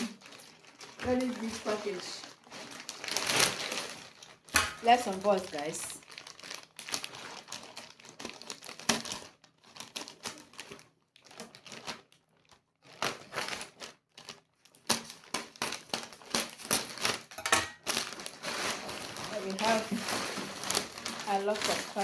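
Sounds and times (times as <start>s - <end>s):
packaging crinkling and tearing: 0.0s - 22.0s.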